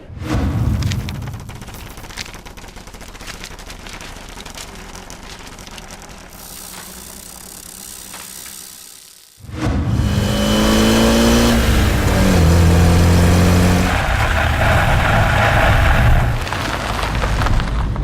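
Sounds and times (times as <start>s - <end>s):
paper crumpling: 0.8s - 8.6s, 16.4s - 18.0s.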